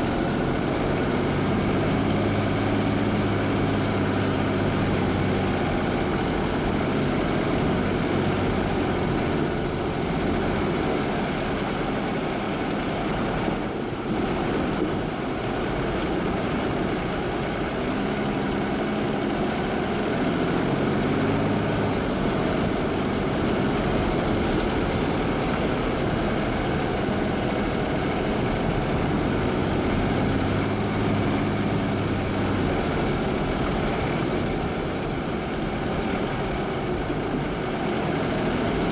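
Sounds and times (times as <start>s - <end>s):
car engine running: 0.0s - 38.9s
road noise: 0.0s - 38.9s.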